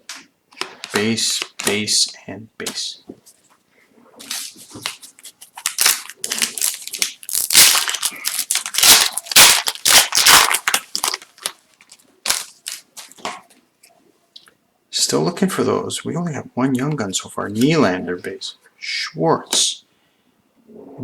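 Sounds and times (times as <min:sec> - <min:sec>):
foil wrapper tearing and crinkling: 0:04.3 - 0:13.2.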